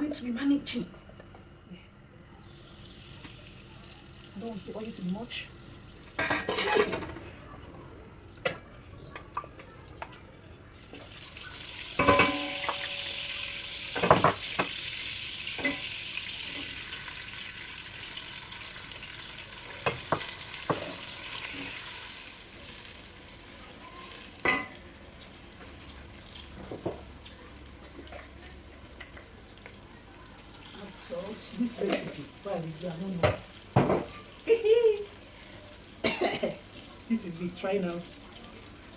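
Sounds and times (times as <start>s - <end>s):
sauce sizzling in hot oil: 2.4s - 6.2s, 10.8s - 38.9s
spoon knocking against pot: 12.0s - 13.1s.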